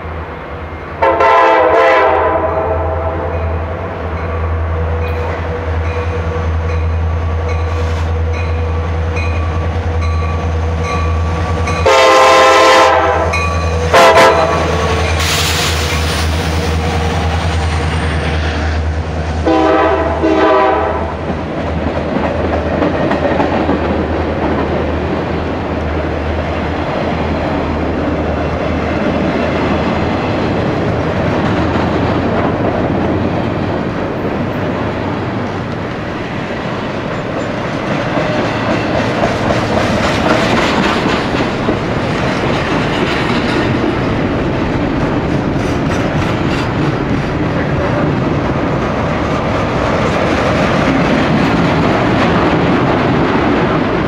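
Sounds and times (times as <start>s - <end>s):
train air horn blasts: 1.0s - 3.7s, 11.8s - 15.8s, 19.4s - 21.2s
locomotive engine drone: 2.2s - 54.0s
train wheels clattering on rails: 3.4s - 54.0s.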